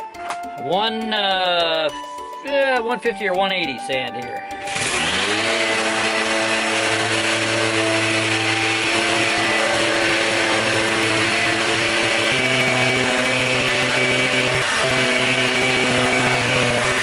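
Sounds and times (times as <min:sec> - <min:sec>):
electric sander on wood: 0:04.5 - 0:17.0.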